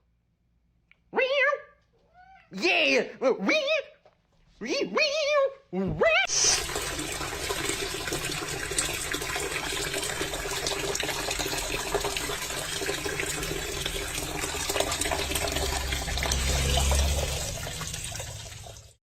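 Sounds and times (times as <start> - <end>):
water running: 6.2 - 19.0
low hum: 13.3 - 18.9.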